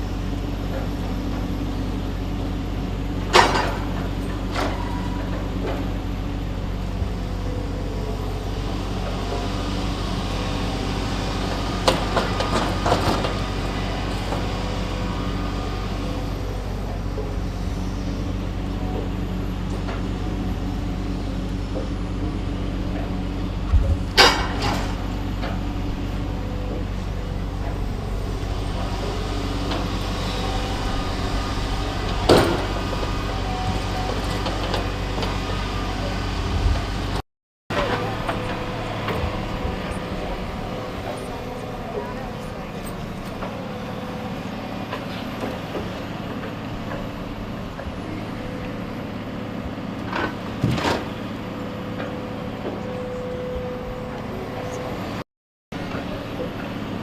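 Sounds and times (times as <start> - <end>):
heavy machine engine running: 0.0 - 57.0
sharp knocks and clanks: 23.7 - 25.6.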